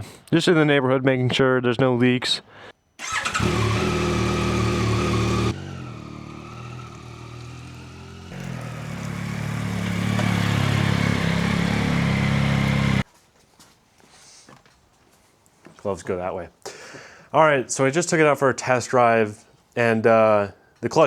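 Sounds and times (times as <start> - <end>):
motorcycle engine running: 3.0 - 13.0.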